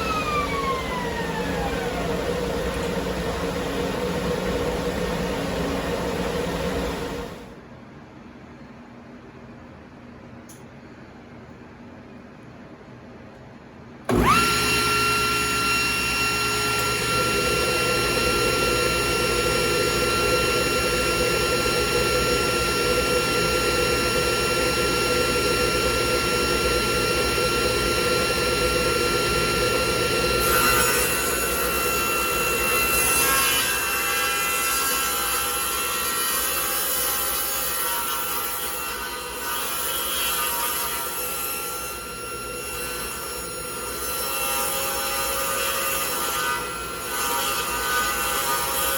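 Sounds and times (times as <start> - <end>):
table saw whining: 0.0 - 7.5, 14.1 - 48.9
saw blade cutting board: 30.1 - 48.9.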